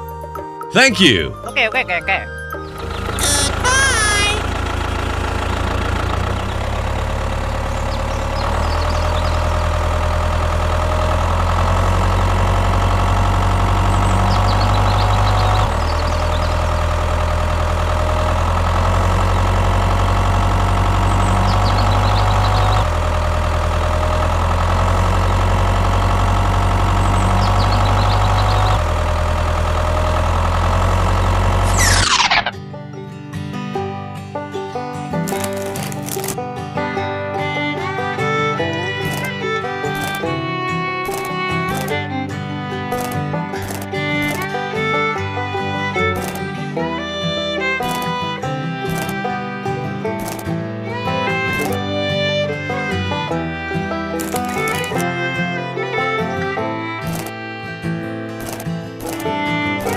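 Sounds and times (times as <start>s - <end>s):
engine droning: 2.4s - 32.6s, 35.2s - 59.9s
faint high chirps: 31.7s - 32.5s.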